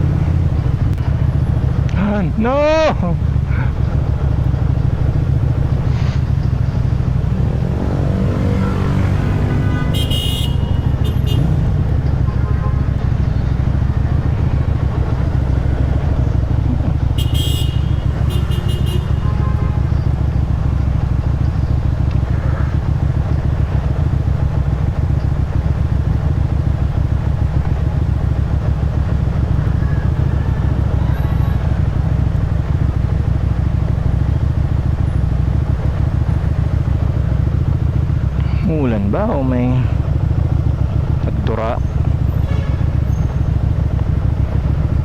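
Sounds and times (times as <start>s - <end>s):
motorcycle engine running: 0.0s - 45.0s.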